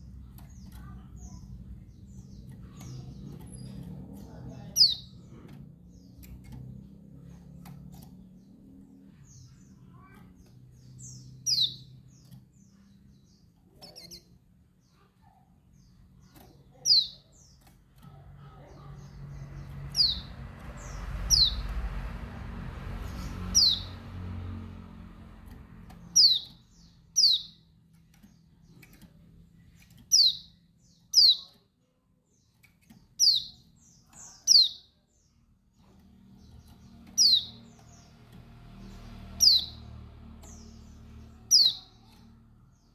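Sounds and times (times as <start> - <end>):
bird high downward chirps: 35.8 - 42.4.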